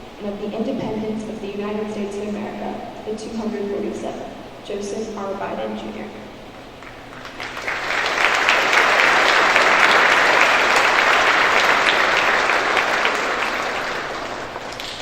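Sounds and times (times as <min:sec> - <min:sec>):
audience applauding: 0:06.8 - 0:15.0.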